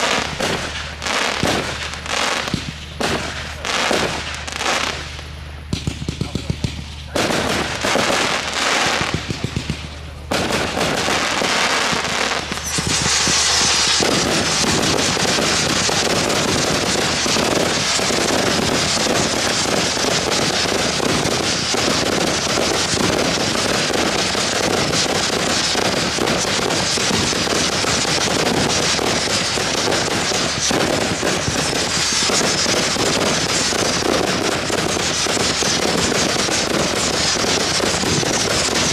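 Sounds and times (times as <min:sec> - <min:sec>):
fireworks cracking and popping: 0:00.0 - 0:38.9.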